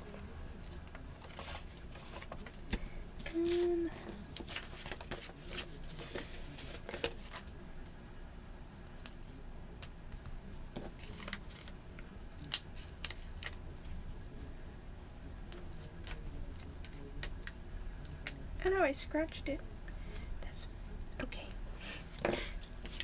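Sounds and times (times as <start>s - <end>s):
paper handling: 0.0s - 7.6s, 9.8s - 11.8s, 21.9s - 23.0s
faint steady hum: 0.0s - 23.0s.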